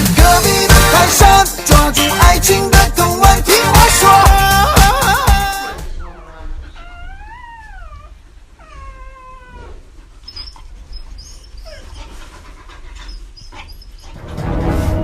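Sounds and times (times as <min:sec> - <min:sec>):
pet animal crying: 0:05.9 - 0:12.2.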